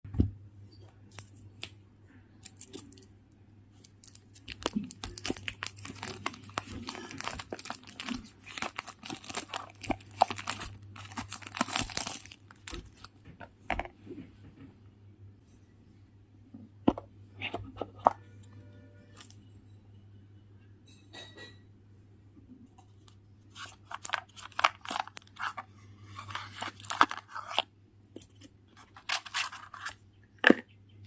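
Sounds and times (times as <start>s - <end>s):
faint steady hum: 0.1s - 31.0s
packaging tearing and crinkling: 4.0s - 13.1s, 23.6s - 27.6s, 28.2s - 30.0s.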